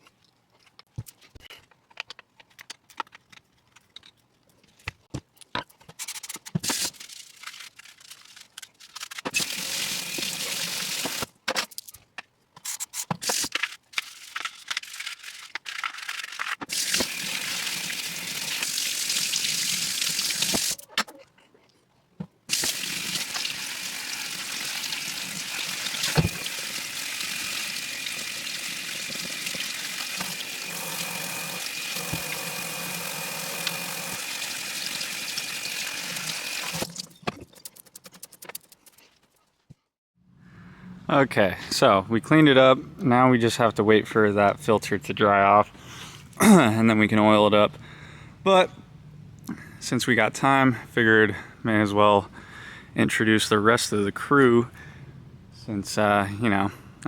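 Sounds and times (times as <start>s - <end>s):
water running and spraying: 9.4s - 11.2s, 16.7s - 20.8s, 22.5s - 37.1s.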